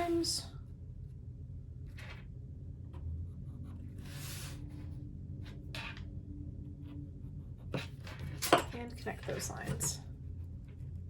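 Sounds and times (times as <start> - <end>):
pencil scratching on paper: 6.9 - 8.4.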